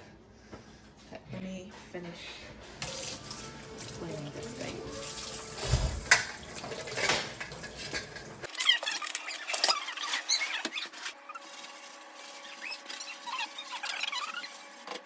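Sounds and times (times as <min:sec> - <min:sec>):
scrubbing kitchen surface: 0:02.5 - 0:08.5, 0:09.9 - 0:14.9
cloth squeaking on surface: 0:08.4 - 0:15.0.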